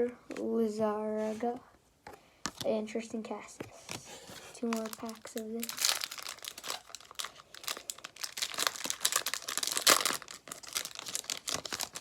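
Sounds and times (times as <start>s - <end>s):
foil wrapper crinkling and tearing: 4.6s - 12.0s.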